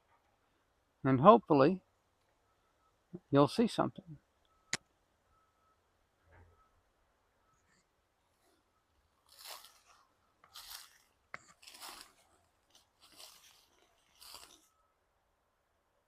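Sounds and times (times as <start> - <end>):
footsteps crunching dry leaves: 9.2 - 14.7.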